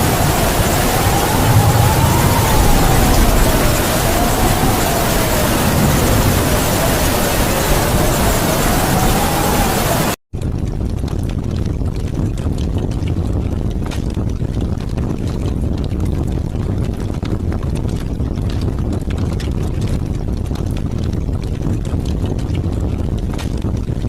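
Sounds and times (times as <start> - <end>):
heavy rain: 0.0 - 10.2
wind rumbling: 0.0 - 10.2.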